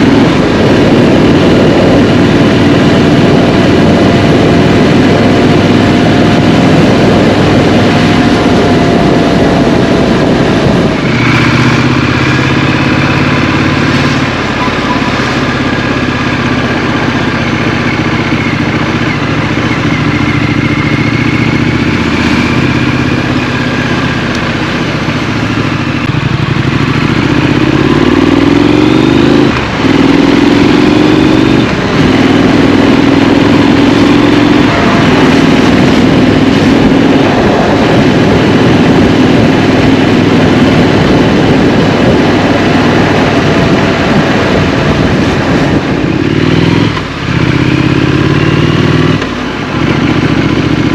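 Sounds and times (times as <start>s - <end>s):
motorcycle engine running: 0.0s - 50.9s
road noise: 0.0s - 50.9s
wind noise: 0.0s - 50.9s.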